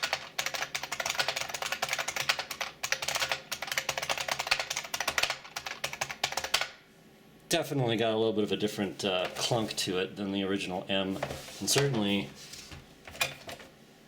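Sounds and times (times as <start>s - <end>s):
clicky keyboard typing: 0.0s - 6.7s.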